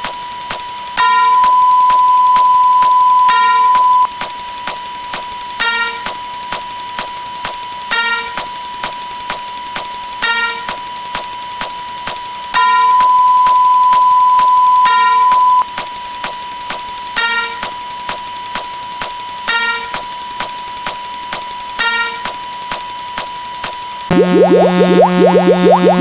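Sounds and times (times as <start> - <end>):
droning beeping tones: 1.0 - 4.1, 12.6 - 15.6, 24.1 - 26.0
loud held beep: 1.0 - 4.1, 12.6 - 15.7, 24.1 - 26.0
short chime-like beep: 1.0 - 4.1, 12.6 - 15.6.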